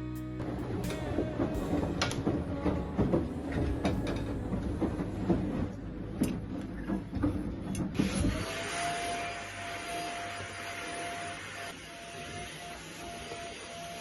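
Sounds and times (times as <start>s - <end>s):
objects knocking and clattering: 0.9s - 8.2s
small electric motor whine: 8.0s - 14.0s.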